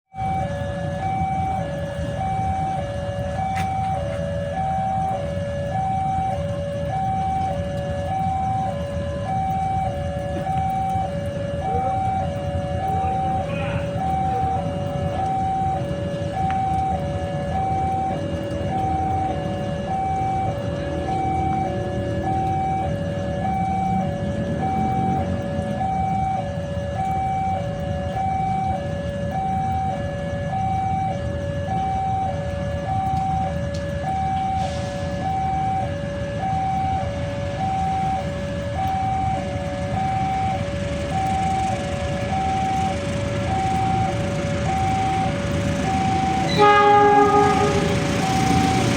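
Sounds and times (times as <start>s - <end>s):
two-tone level crossing alarm: 0.1s - 48.9s
heavy rain hissing: 42.8s - 48.9s.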